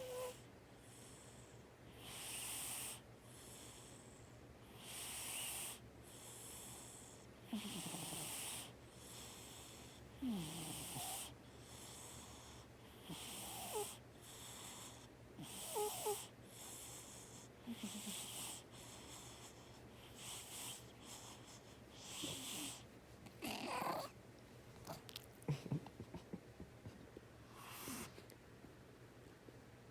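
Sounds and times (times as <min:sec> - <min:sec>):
cat snoring: 0:00.0 - 0:21.4, 0:22.0 - 0:22.8, 0:23.4 - 0:24.1.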